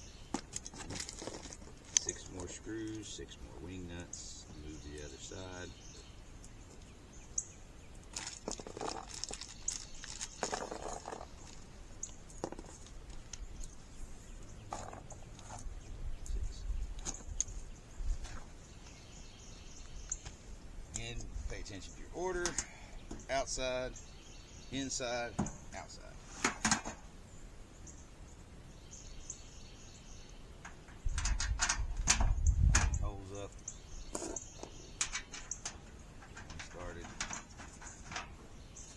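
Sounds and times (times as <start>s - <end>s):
small birds chirping: 0.0s - 38.9s
metal panels clicking and knocking: 26.4s - 27.0s, 30.6s - 33.1s, 34.1s - 38.6s.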